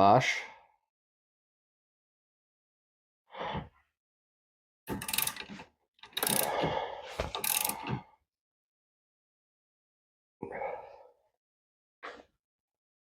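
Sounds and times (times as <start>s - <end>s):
hand ratchet clicking: 4.9s - 6.6s, 7.3s - 7.9s.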